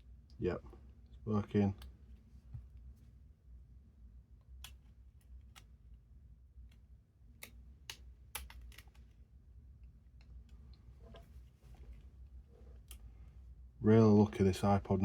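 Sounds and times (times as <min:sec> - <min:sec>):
small parts clicking: 0:07.4 - 0:09.2.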